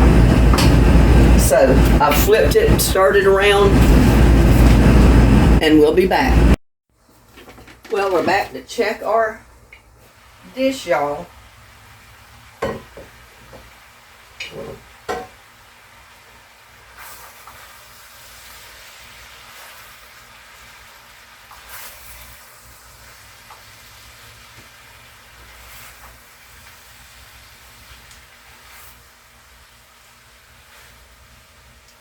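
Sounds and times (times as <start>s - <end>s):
food sizzling in a frying pan: 11.3s - 31.8s.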